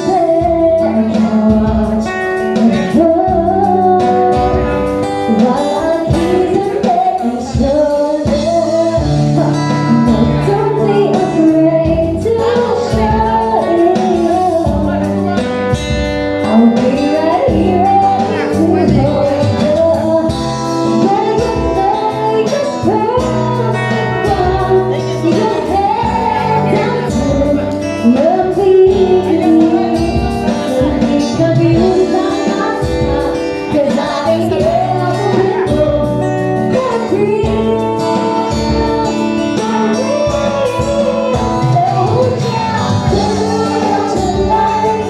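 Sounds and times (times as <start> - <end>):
band playing a song with singer: 0.0 - 45.0.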